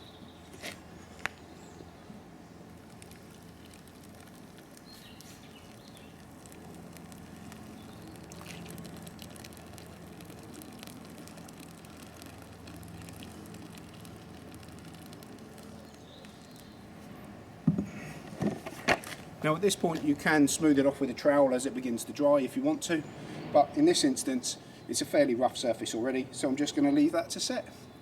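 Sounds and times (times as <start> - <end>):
low steady hum: 0.0 - 28.0
wet concrete pouring: 2.8 - 21.0.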